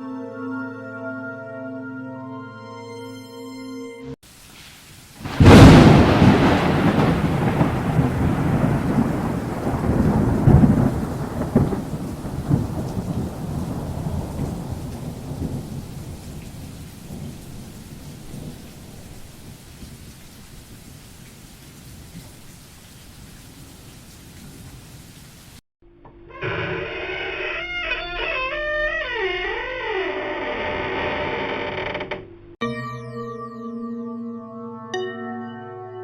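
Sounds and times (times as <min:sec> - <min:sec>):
rain hiss: 0:04.2 - 0:25.6
thunder crack and rumble: 0:05.2 - 0:21.0.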